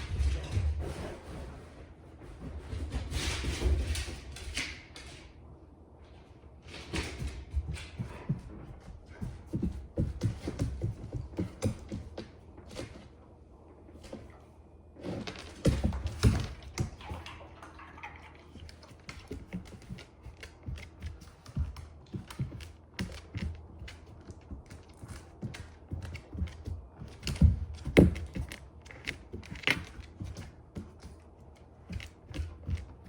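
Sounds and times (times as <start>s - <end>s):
dog claws clicking on hard floor: 15.0s - 17.3s, 18.5s - 33.0s.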